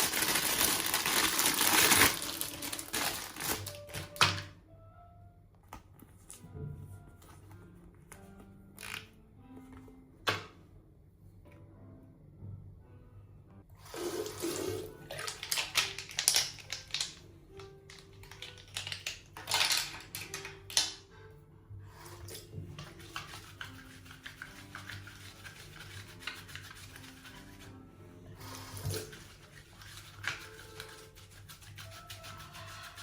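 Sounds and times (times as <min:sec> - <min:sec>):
water running from a tap: 0:13.8 - 0:17.1, 0:22.0 - 0:27.6, 0:28.4 - 0:33.0.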